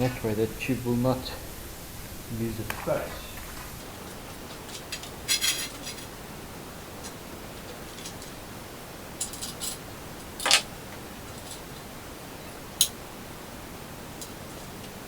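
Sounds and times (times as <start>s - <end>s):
metallic clicks of tools and bolts: 4.1s - 6.1s, 9.2s - 10.7s.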